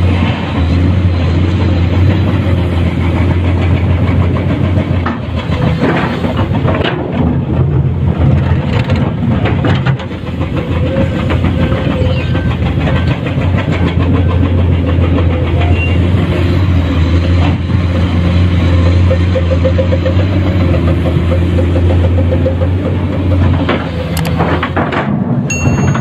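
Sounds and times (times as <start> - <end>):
excavator diesel engine running: 0.0 - 26.0.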